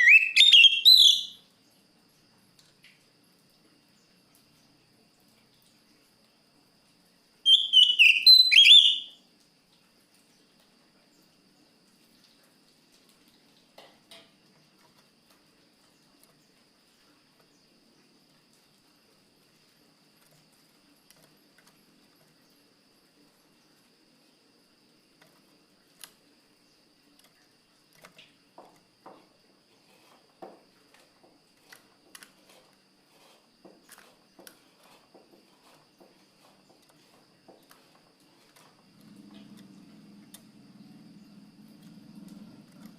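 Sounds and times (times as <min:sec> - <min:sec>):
bird singing whistled notes: 0:00.0 - 0:01.5, 0:07.5 - 0:09.2.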